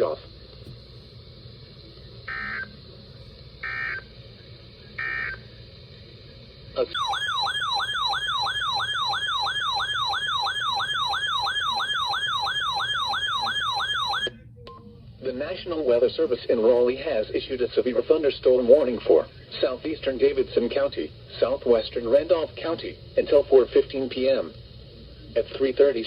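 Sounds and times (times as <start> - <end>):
warbling electronic alert tone: 7.0 - 14.3.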